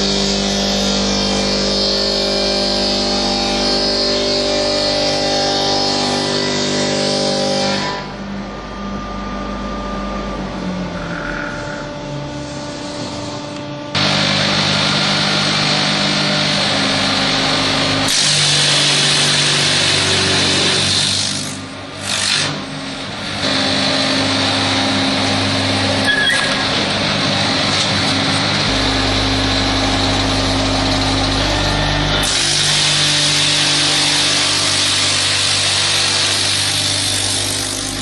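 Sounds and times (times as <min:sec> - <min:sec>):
wood lathe cutting hiss: 0:14.0 - 0:22.5, 0:23.6 - 0:38.0.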